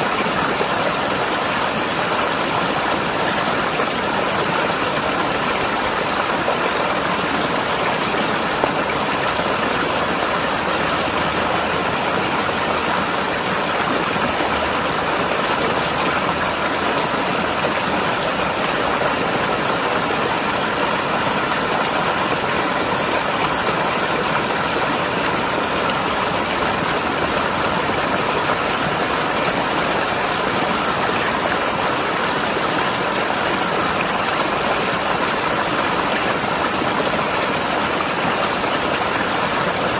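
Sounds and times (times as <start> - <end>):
river rushing over rocks: 0.0 - 39.9.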